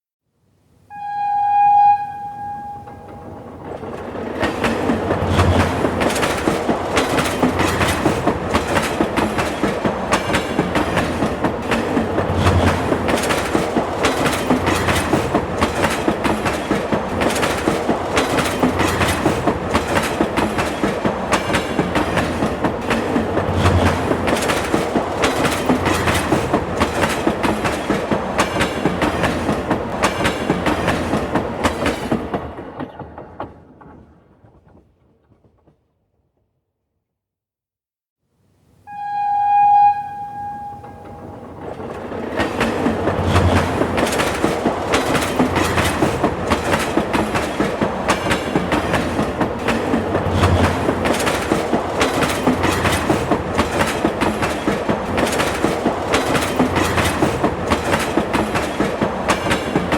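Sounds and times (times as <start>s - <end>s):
train horn blast: 0.9s - 3.5s, 38.9s - 41.5s
train wheels clickety-clack: 3.0s - 35.9s, 40.9s - 59.9s.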